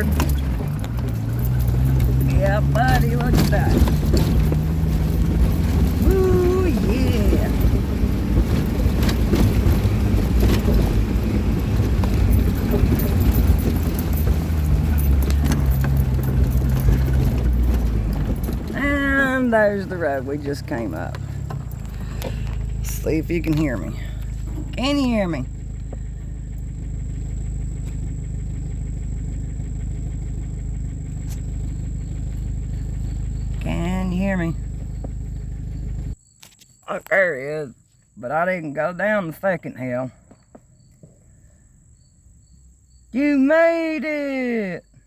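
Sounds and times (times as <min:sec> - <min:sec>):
vehicle engine under load: 0:00.0 - 0:36.2
vehicle knocks and rattles: 0:00.0 - 0:36.2.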